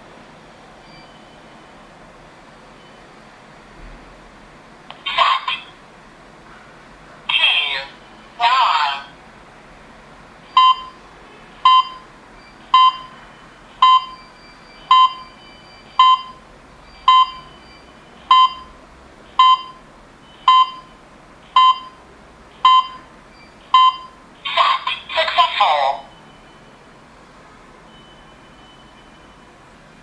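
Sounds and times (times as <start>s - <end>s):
alarm panel short beeps: 10.5s - 11.0s, 11.7s - 12.1s, 12.8s - 13.2s, 13.8s - 16.4s, 17.1s - 18.7s, 19.4s - 20.9s, 21.6s - 22.0s, 22.6s - 24.2s.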